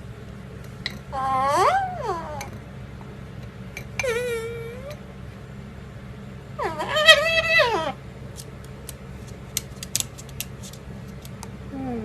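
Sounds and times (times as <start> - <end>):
parrot wailing calls: 1.1 - 2.6, 4.0 - 5.0, 6.6 - 8.0.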